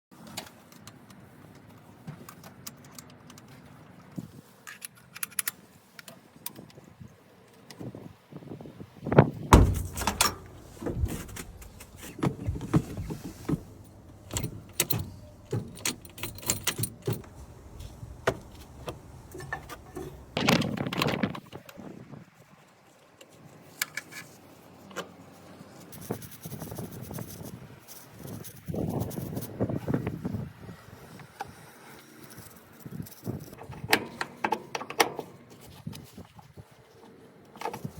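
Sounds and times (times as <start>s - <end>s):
knocks and rattles of handling: 9.5s - 21.6s.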